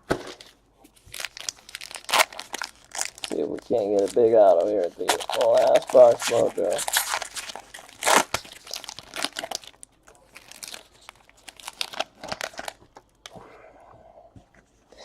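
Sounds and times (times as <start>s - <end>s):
plastic wrapping tearing and crinkling: 1.0s - 12.9s.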